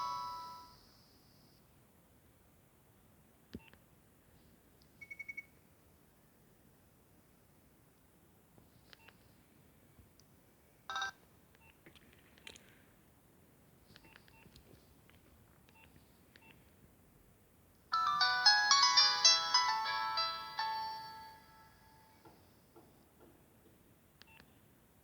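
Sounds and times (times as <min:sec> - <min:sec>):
polyphonic phone ringtone: 0:00.0 - 0:00.8, 0:10.9 - 0:11.1, 0:18.0 - 0:22.2.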